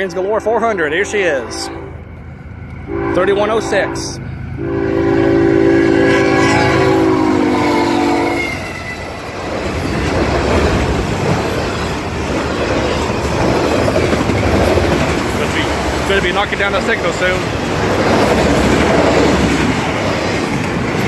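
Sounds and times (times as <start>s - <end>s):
locomotive air horn: 0.0s - 2.0s, 2.9s - 9.1s
train wheels clacking on rails: 8.5s - 21.0s.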